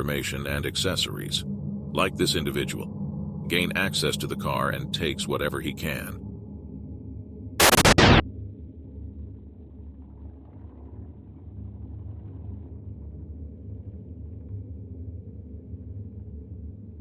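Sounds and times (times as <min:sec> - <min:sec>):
faint low hum: 0:00.0 - 0:06.5
low outdoor rumble: 0:00.0 - 0:06.9.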